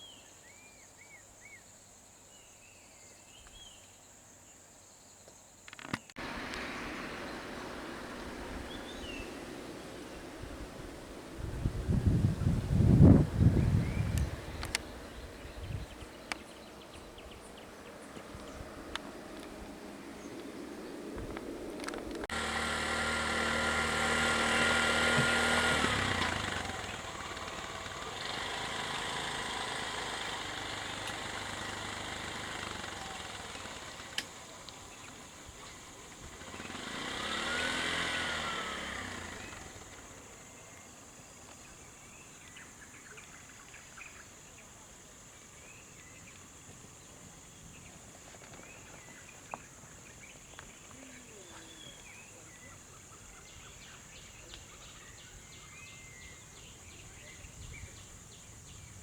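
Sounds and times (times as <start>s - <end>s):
vehicles passing on road: 6.2s - 41.5s.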